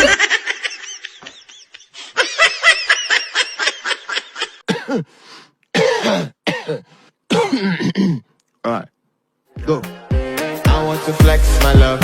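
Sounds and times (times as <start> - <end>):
person giggling: 0.0 - 4.7.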